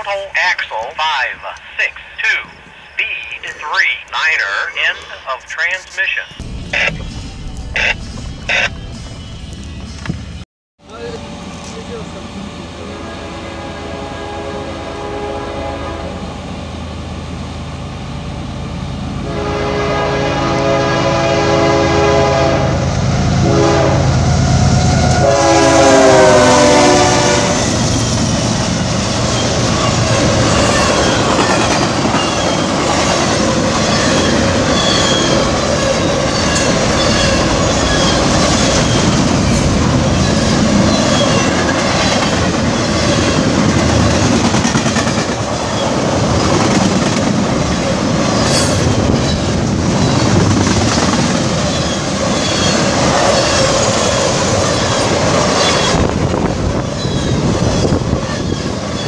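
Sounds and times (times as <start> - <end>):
locomotive horn: 6.4 - 10.0, 12.8 - 16.4, 19.2 - 27.9
train wheels clickety-clack: 28.0 - 59.0.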